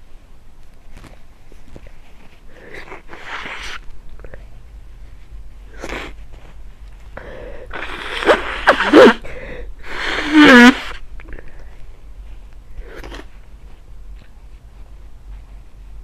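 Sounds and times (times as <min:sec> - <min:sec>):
catching breaths: 0:07.0 - 0:08.4, 0:09.2 - 0:10.3
person sneezing: 0:07.7 - 0:11.0.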